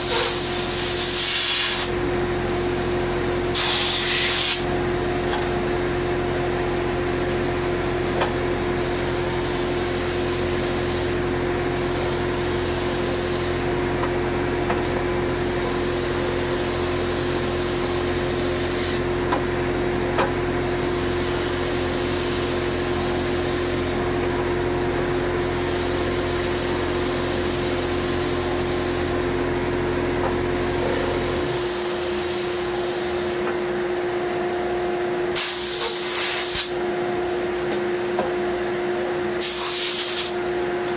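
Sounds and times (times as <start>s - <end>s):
deep hum: 29.3s - 32.2s
power sander on wood: 30.2s - 33.4s.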